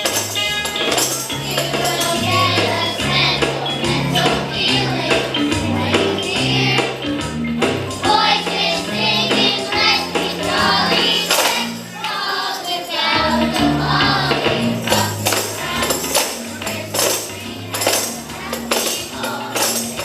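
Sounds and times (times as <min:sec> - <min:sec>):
bass accompaniment: 0:00.0 - 0:12.2, 0:13.0 - 0:20.0
children singing: 0:00.0 - 0:20.0
tambourine shaken and struck: 0:00.0 - 0:20.0.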